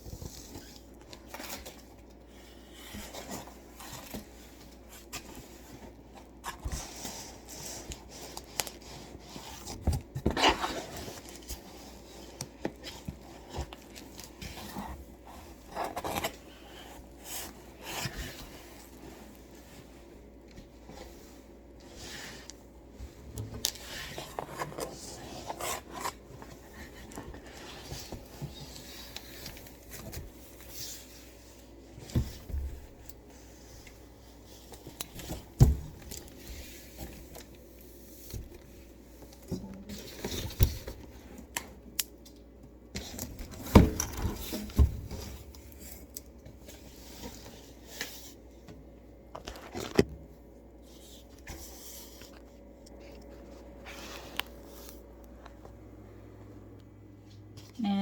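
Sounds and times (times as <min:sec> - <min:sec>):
box and packaging handling: 0:00.0 - 0:55.9.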